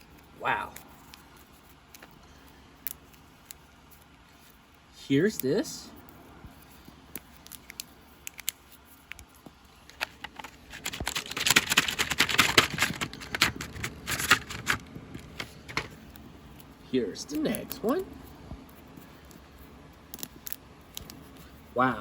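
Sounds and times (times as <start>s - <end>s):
plastic packaging crinkling: 9.8s - 16.0s
plastic toy clicking: 9.9s - 14.8s.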